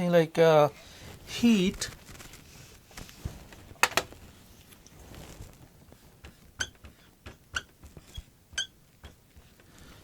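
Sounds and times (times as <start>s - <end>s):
pen squeaking while writing: 6.6s - 9.2s.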